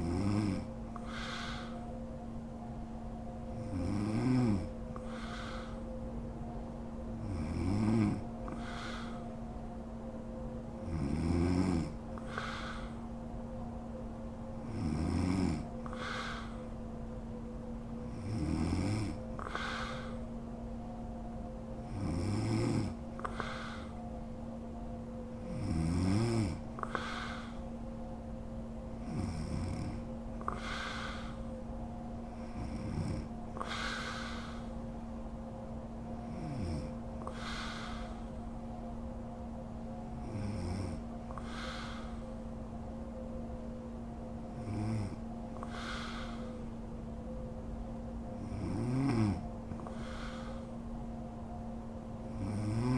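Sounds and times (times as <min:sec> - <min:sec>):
woman snoring: 0:00.0 - 0:01.8, 0:03.6 - 0:05.8, 0:07.2 - 0:09.2, 0:10.8 - 0:13.0, 0:14.6 - 0:16.6, 0:18.1 - 0:20.2, 0:21.9 - 0:23.9, 0:25.4 - 0:27.6, 0:29.0 - 0:31.4, 0:32.4 - 0:34.7, 0:36.3 - 0:38.3, 0:40.2 - 0:42.2, 0:44.5 - 0:46.6, 0:48.4 - 0:50.7, 0:52.3 - 0:52.9
soft hissing breath: 0:00.0 - 0:52.9
steady hum: 0:00.0 - 0:52.9
airy hissing breath: 0:01.0 - 0:02.1, 0:04.5 - 0:06.1, 0:08.4 - 0:09.5, 0:12.2 - 0:13.2, 0:15.7 - 0:16.8, 0:19.4 - 0:20.4, 0:22.9 - 0:24.2, 0:26.6 - 0:27.8, 0:29.0 - 0:31.7, 0:32.3 - 0:35.1, 0:36.3 - 0:38.5, 0:40.2 - 0:42.6, 0:45.1 - 0:46.9, 0:49.7 - 0:50.9.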